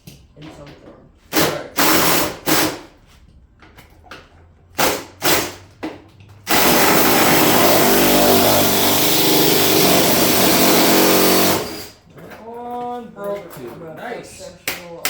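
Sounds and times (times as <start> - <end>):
power drill motor: 6.5 - 12.0.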